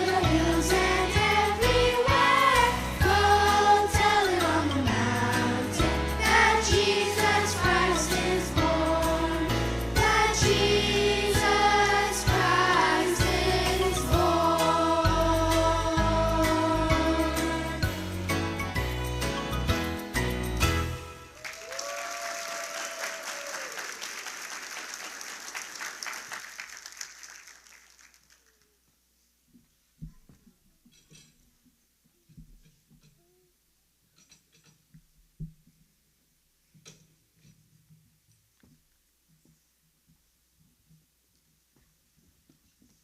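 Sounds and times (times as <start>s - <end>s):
choir singing: 0.0s - 18.2s
bass line: 0.0s - 21.0s
church band music: 0.0s - 21.4s
drum beats: 0.8s - 21.0s
audience applauding: 21.2s - 28.6s.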